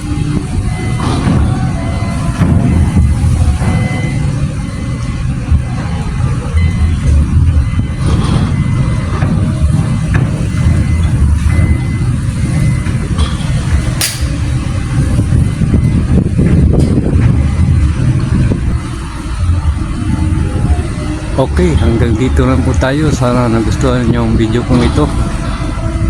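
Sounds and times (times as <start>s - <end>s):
low rumbling vehicle noise: 0.0s - 26.0s
sharp click: 14.0s - 14.4s.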